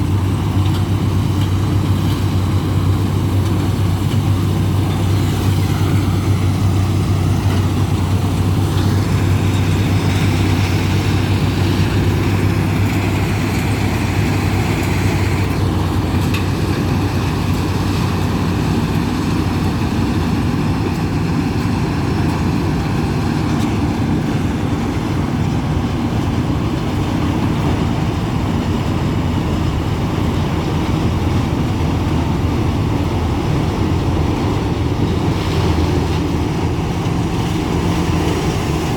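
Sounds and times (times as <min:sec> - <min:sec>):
combine harvester engine hum: 0:00.0 - 0:38.9.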